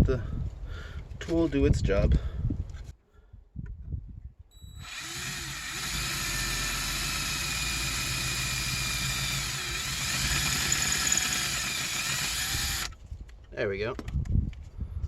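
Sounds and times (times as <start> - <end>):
electric drill whining: 4.8 - 13.0.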